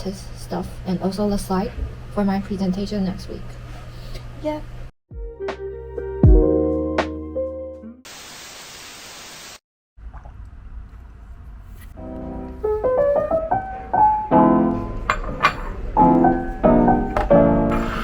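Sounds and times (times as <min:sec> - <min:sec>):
lo-fi piano music over a beat: 0:05.2 - 0:08.0, 0:12.0 - 0:18.0.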